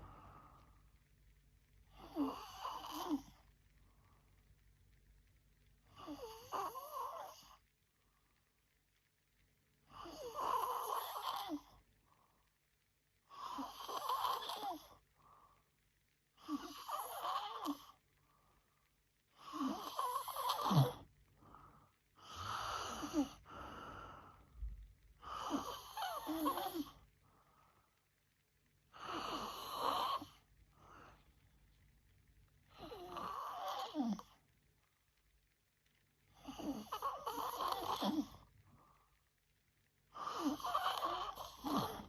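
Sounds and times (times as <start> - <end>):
woman snoring: 1.9 - 3.4, 5.9 - 7.6, 9.9 - 11.7, 13.3 - 14.9, 16.4 - 18.0, 19.4 - 21.0, 22.2 - 24.1, 25.2 - 27.0, 28.9 - 30.4, 32.7 - 34.3, 36.4 - 38.5, 40.1 - 42.0.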